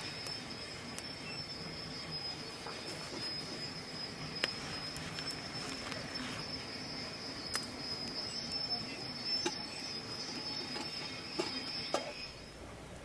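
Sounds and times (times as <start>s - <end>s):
high-pitched insect trill: 0.0s - 12.6s
sharp clicks: 7.5s - 8.2s.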